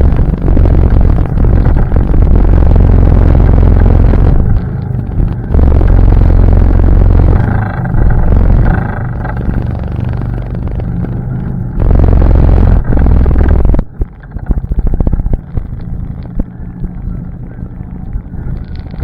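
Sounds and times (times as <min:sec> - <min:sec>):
atv engine revving: 0:00.0 - 0:13.7.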